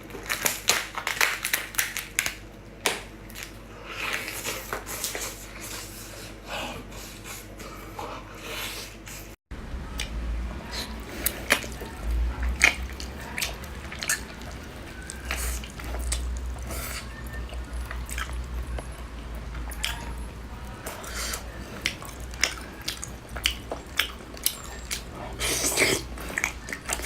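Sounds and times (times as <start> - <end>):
low steady rumble: 9.5 - 27.0
wet chewing and smacking: 9.9 - 27.0.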